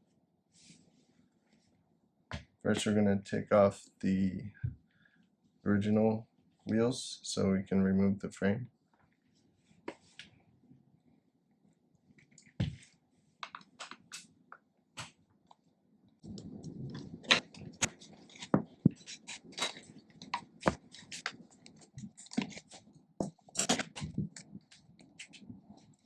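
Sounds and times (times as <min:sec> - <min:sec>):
handling noise: 0:16.2 - 0:25.9.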